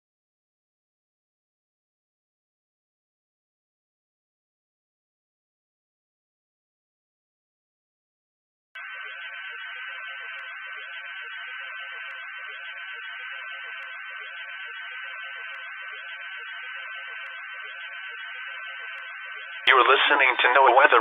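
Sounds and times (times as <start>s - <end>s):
radio static hiss: 8.8s - 21.0s
thin high whine: 8.8s - 21.0s.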